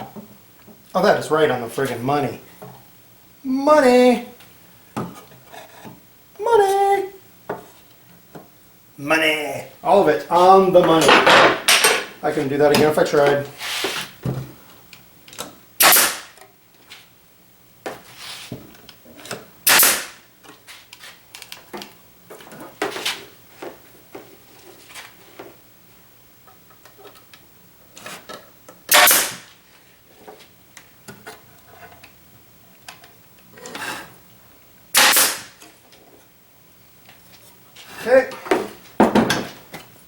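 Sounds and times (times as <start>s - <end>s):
wood pieces knocking: 10.8s - 12.2s, 38.6s - 39.7s
nail gun firing: 15.8s - 16.4s, 19.7s - 20.2s, 28.9s - 29.5s, 34.9s - 35.6s.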